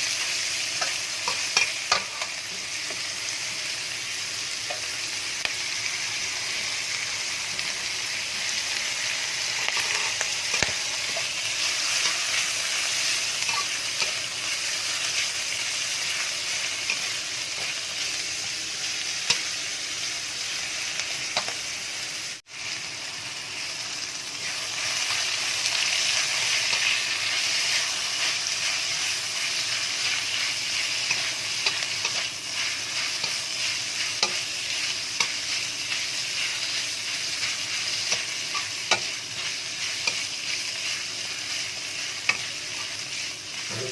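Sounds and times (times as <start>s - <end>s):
stir-fry sizzling in a hot pan: 0.0s - 43.9s.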